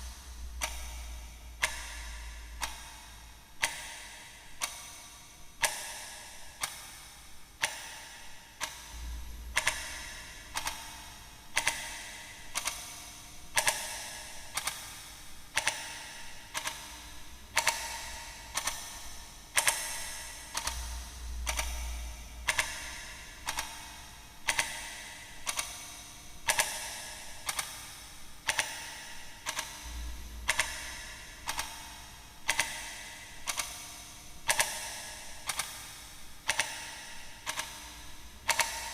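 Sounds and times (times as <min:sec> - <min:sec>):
clock ticking: 0:38.5 - 0:38.9.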